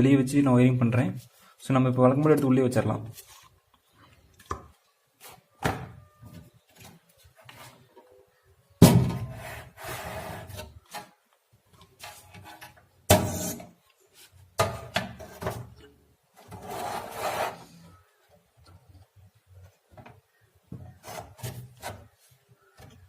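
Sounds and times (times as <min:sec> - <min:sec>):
scraping and rubbing: 0:09.2 - 0:11.2, 0:16.4 - 0:18.1, 0:20.8 - 0:22.5.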